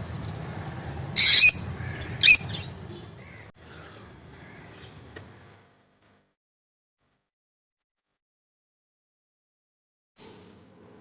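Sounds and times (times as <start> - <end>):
parrots squawking: 1.2 - 3.4.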